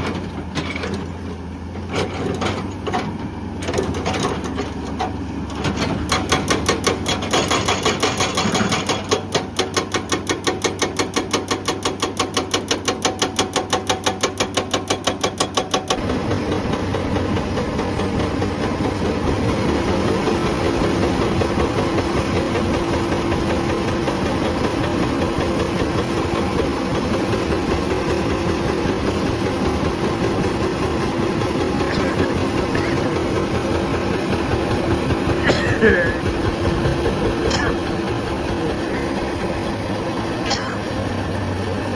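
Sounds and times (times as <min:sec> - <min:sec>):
excavator engine running: 0:00.0 - 0:41.9
hydraulic breaker hammering rock: 0:01.9 - 0:41.2.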